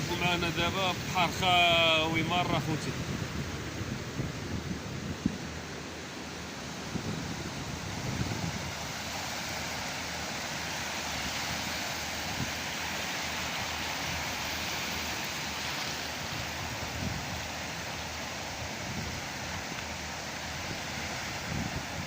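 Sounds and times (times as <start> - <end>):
wind buffeting microphone: 0.0 - 9.1, 16.1 - 19.7, 20.4 - 22.0
sea surf breaking: 0.0 - 22.0.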